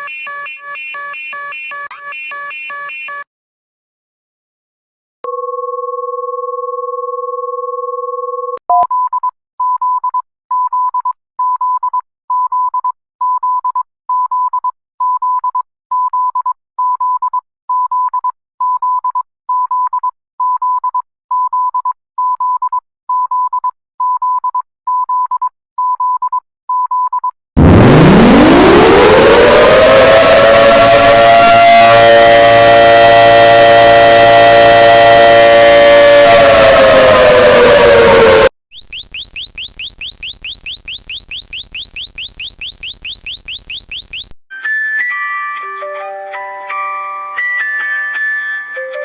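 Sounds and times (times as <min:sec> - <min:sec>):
repeating alarm beeps: 0:00.0 - 0:03.3, 0:38.7 - 0:44.4
two-note alarm tone: 0:27.6 - 0:44.3.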